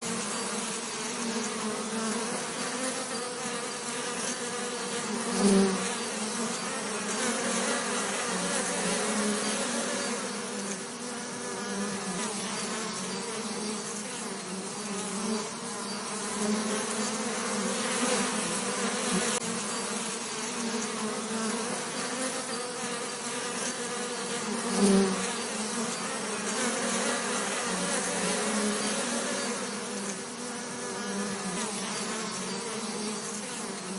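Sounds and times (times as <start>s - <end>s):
bees buzzing: 0.0s - 33.9s.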